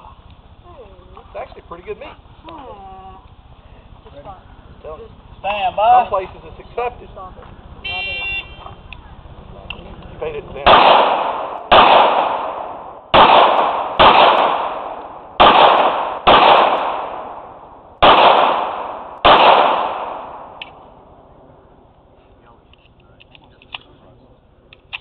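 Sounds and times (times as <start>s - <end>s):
pistol shots echoing: 10.6s - 21.0s.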